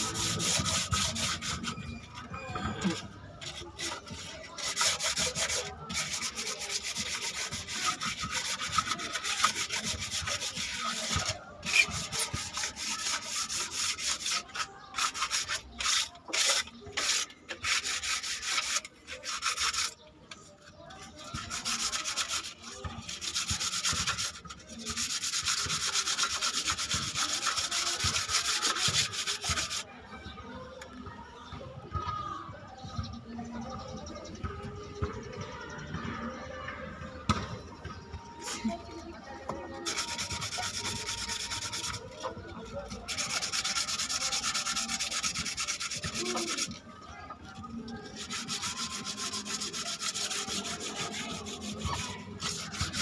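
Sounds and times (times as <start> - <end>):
hand sanding strokes: 0.0 - 1.9, 3.4 - 20.0, 21.1 - 29.8, 39.7 - 46.8, 47.9 - 53.0.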